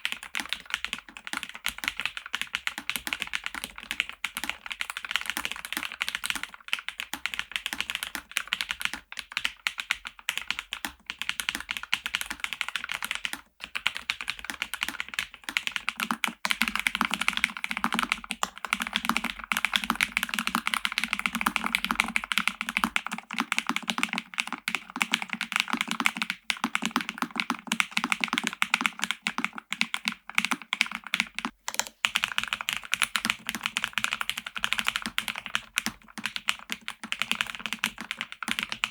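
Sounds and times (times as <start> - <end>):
mechanical keyboard typing: 0.1 - 38.9.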